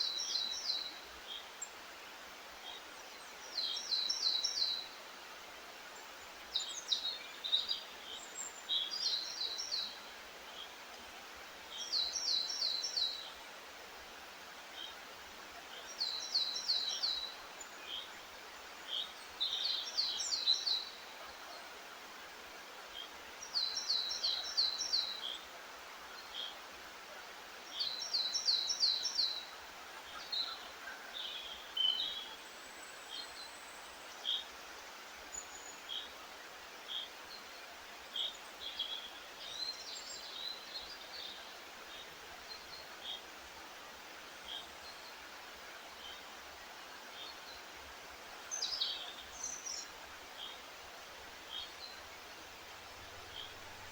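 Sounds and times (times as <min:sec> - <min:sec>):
steady hiss: 0:00.0 - 0:53.9.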